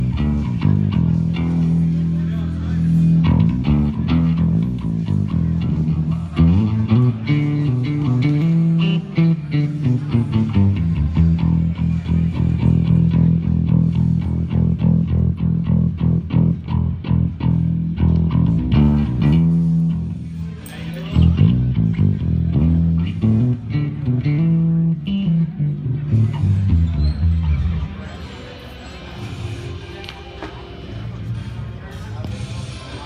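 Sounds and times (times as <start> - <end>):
electric bass guitar riff: 0.0 - 20.5, 21.2 - 28.0
electric guitar: 2.8 - 20.2, 21.2 - 27.9.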